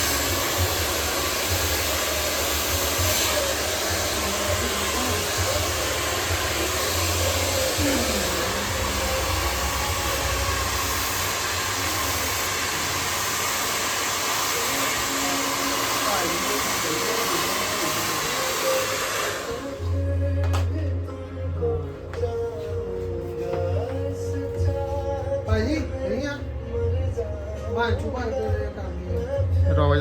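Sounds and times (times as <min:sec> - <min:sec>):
hair dryer running: 0:00.0 - 0:20.8.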